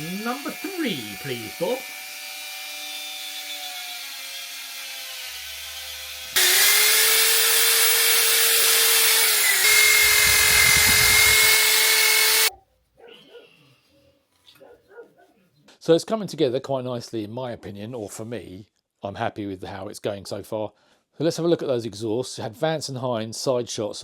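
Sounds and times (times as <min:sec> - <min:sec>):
electric buffing tool polishing metal: 0:00.0 - 0:12.5.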